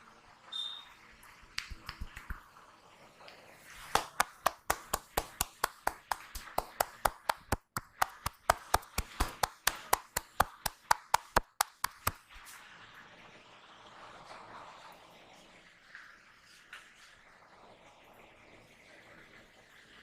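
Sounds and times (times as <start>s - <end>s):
hands slapping rhythmically: 1.6s - 2.4s, 3.9s - 12.3s.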